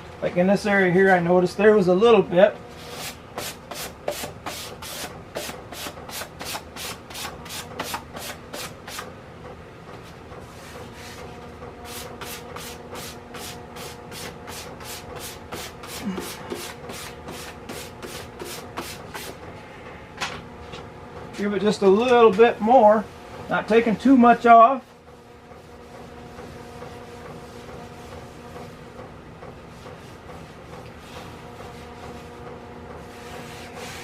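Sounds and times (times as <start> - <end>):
sandpaper rubbing back and forth: 2.7 - 9.1, 11.9 - 19.4, 33.0 - 34.0.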